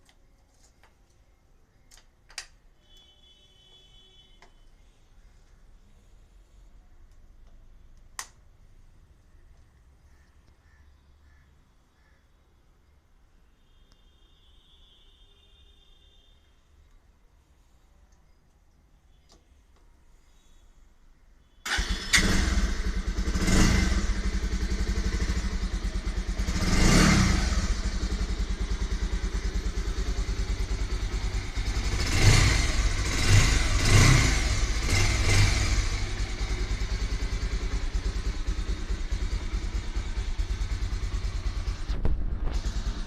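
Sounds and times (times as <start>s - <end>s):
motorcycle engine starting and idling: 21.6s - 43.0s
motorcycle throttle blips: 21.6s - 43.0s.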